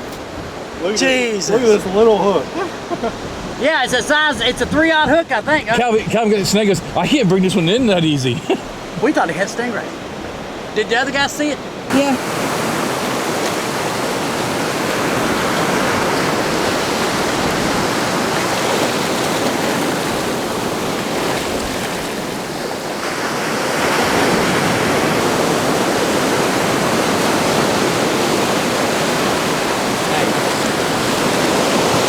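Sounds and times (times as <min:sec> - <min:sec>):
ocean surf breaking: 0:00.0 - 0:32.0.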